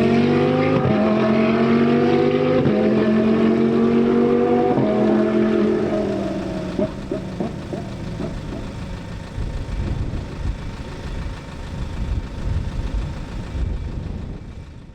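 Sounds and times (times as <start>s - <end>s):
race car engine: 0.0s - 14.9s
sharp exhaust pops: 2.6s - 13.8s.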